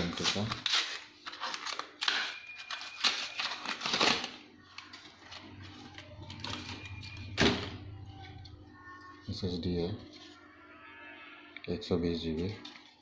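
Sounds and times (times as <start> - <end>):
packaging rustling: 0.0 - 7.1.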